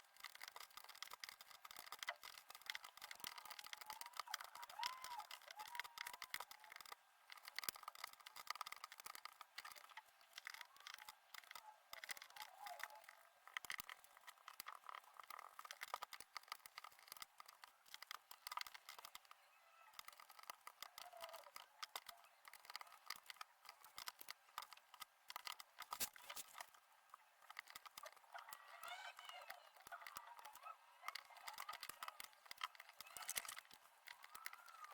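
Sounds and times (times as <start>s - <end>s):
puzzle pieces clicking and rustling: 30.4s - 34.9s.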